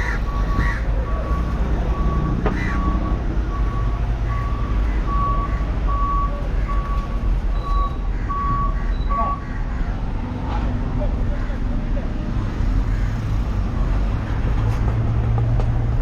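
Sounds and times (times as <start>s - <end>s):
engine rumble: 0.0s - 16.0s
reversing alarm beeping: 0.2s - 9.4s.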